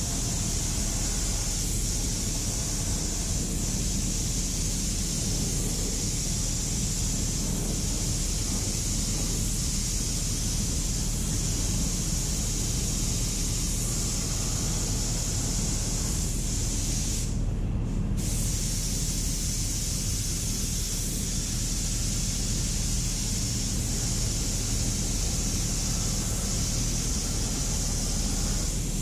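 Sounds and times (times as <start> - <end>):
spray paint gun hissing: 0.0 - 17.4, 18.2 - 29.0
steady low hum: 0.0 - 29.0.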